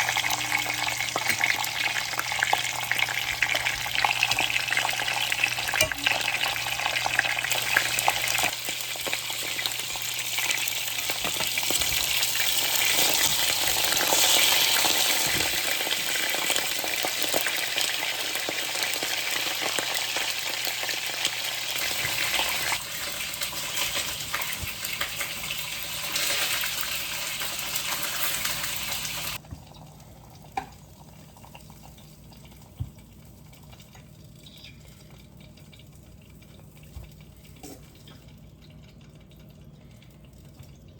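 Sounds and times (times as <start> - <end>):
food sizzling in a pan: 0.0 - 29.4.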